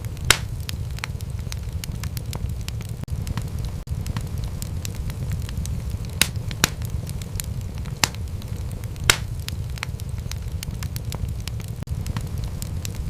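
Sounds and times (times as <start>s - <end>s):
fire rumbling and crackling: 0.0s - 13.0s
sharp pops of fire: 0.0s - 13.0s.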